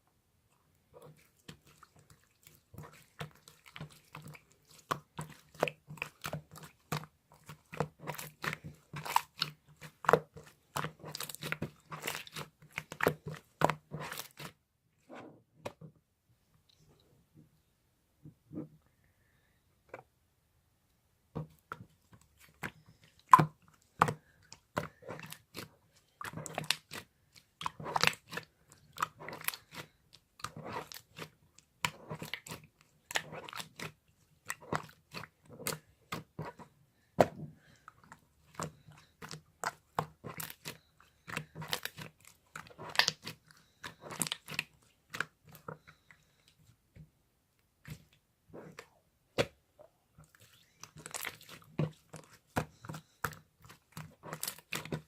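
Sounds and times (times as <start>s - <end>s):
slime squished by hand: 1.0s - 14.6s, 38.0s - 45.9s, 50.2s - 55.0s.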